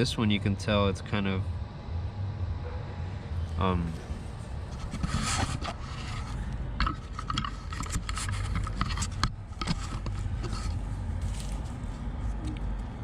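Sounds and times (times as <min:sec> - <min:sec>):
steady low hum: 0:00.0 - 0:13.0
metal tools scraping and clicking: 0:04.8 - 0:11.6.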